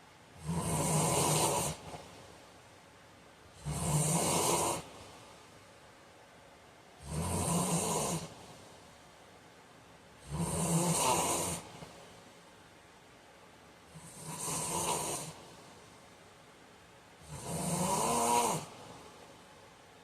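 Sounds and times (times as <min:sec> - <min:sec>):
man snoring: 0:00.4 - 0:02.0, 0:03.6 - 0:04.9, 0:07.0 - 0:08.4, 0:10.2 - 0:11.7, 0:13.9 - 0:15.4, 0:17.2 - 0:18.8.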